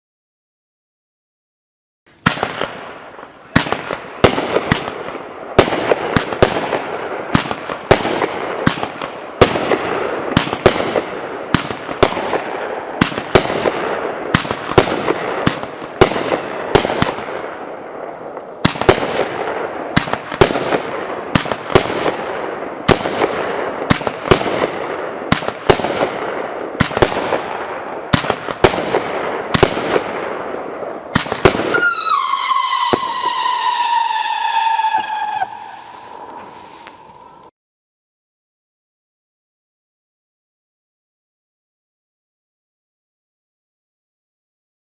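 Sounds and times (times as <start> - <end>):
firework shots firing: 2.2 - 37.3
firework hissing and crackling: 18.1 - 37.5.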